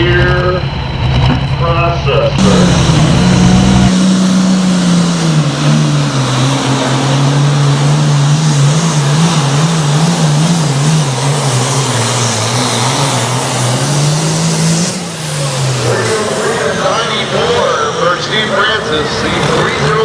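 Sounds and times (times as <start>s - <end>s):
tractor diesel engine under load: 0.0s - 20.0s.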